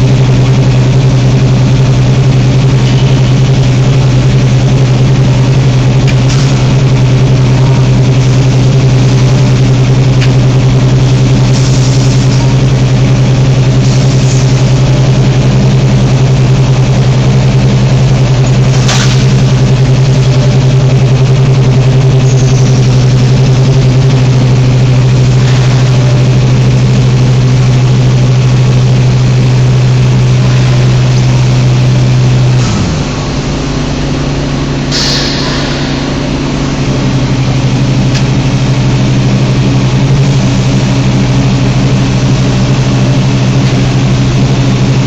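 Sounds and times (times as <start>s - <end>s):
industrial machinery humming: 0.0s - 45.0s
short hiss of air: 34.9s - 36.4s.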